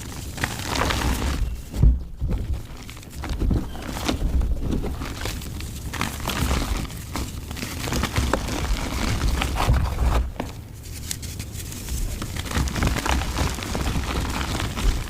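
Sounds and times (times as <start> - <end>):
dry mud crunching: 0.0 - 15.0
heavy thump: 1.7 - 2.6.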